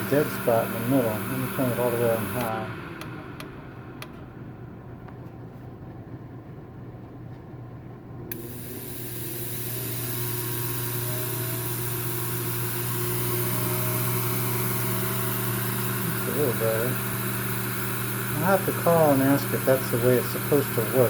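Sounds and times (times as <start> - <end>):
fan air whoosh: 0.0 - 9.2.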